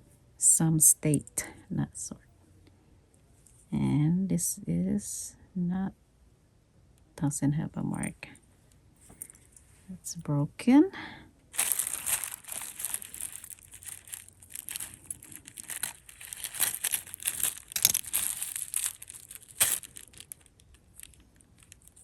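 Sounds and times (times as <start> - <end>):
jewelry crinkling and clicking: 11.5 - 22.0.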